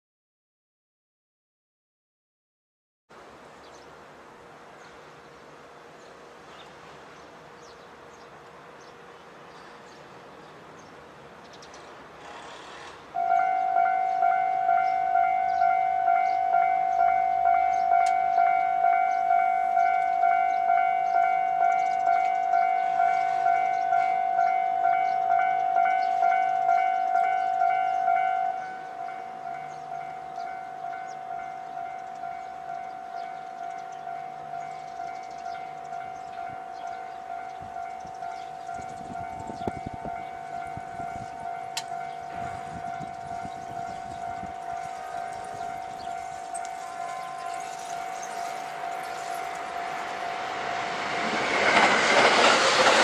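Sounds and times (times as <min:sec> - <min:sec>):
train rumble and clatter: 0:04.0 - 0:53.0
level crossing warning bell: 0:13.1 - 0:53.0.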